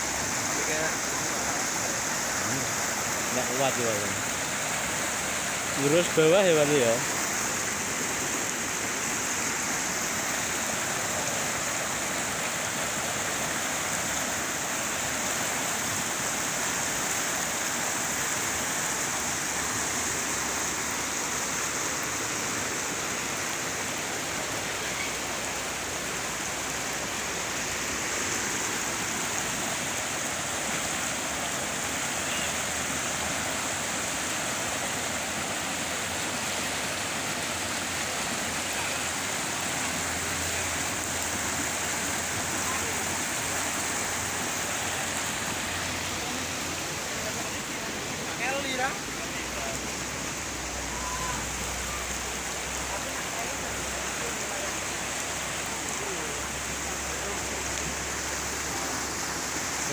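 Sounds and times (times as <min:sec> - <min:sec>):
rushing water: 0:00.0 - 0:59.9.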